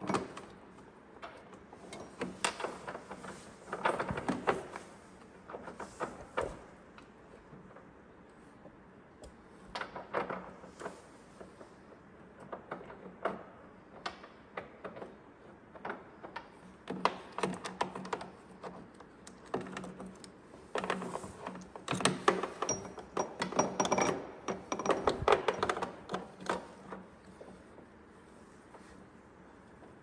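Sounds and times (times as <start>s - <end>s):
metal parts clicking and clinking: 17.0s - 27.0s.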